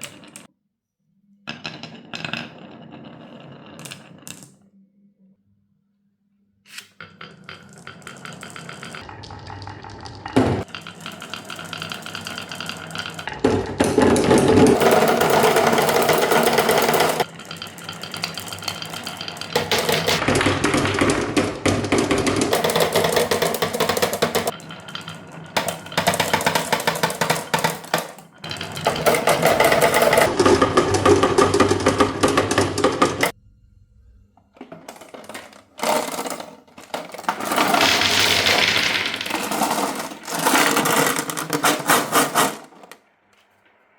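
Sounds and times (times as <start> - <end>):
marbles rattling down wooden run: 7.0 - 33.4, 34.9 - 43.0.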